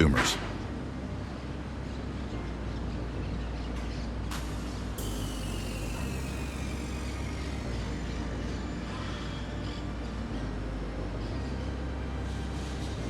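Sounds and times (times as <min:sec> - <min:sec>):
high whine falling in pitch: 0:04.8 - 0:10.5.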